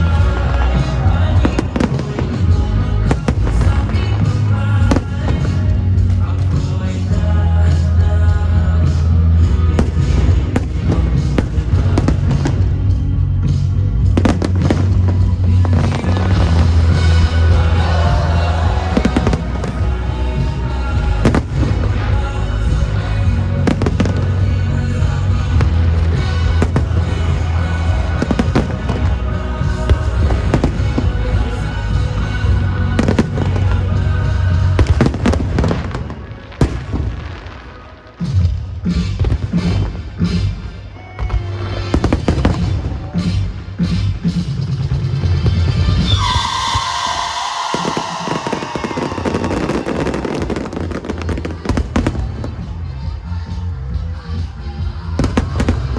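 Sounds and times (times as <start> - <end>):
fireworks bursting bangs: 0.0 - 7.9, 8.8 - 24.6, 25.3 - 53.3, 54.9 - 55.9
soundtrack music with heavy bass: 0.0 - 55.9
heavy low boom: 8.0 - 31.6.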